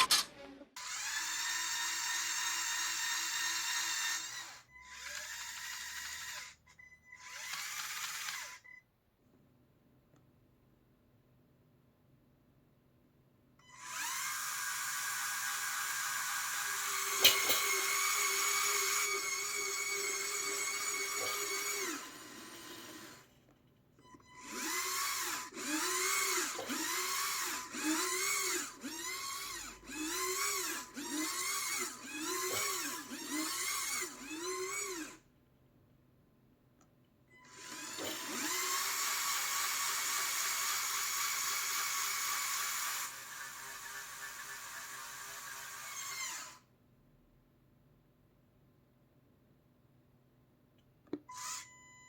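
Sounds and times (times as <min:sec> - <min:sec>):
small electric motors whining: 0:00.8 - 0:08.7, 0:13.6 - 0:23.3, 0:24.0 - 0:35.2, 0:37.4 - 0:46.7, 0:51.3 - 0:52.0.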